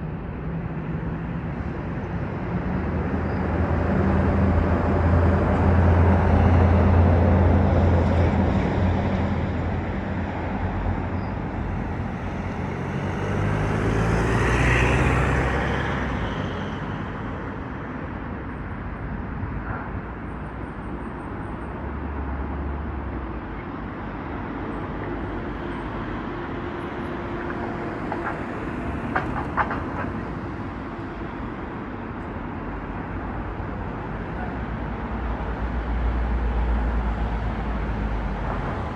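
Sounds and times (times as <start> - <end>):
train engine rumble: 24.8 - 38.9.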